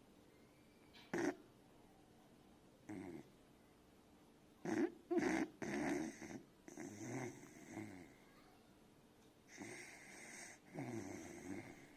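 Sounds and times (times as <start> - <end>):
dog snoring: 1.1 - 1.4, 2.9 - 3.3, 4.6 - 8.1, 9.5 - 11.9.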